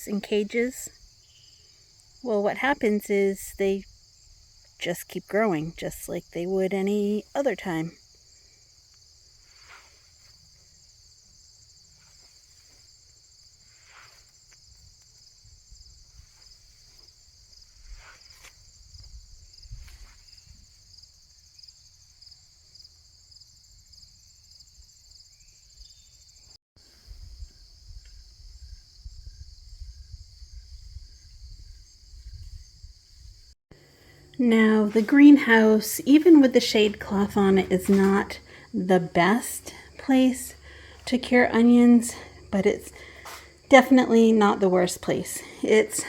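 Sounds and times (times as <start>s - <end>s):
crickets chirping: 0.0s - 46.0s.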